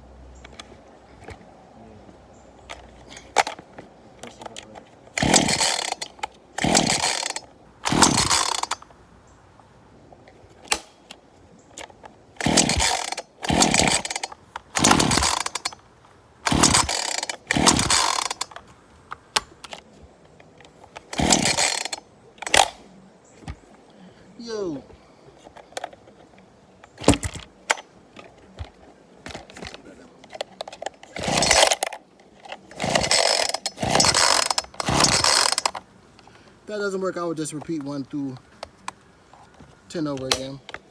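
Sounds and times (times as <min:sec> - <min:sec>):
chainsaw engine cranking: 0:02.6 - 0:09.0, 0:10.5 - 0:22.9, 0:25.4 - 0:40.9
recoil starter cord yanks: 0:02.6 - 0:09.0, 0:10.5 - 0:23.8, 0:24.4 - 0:40.9.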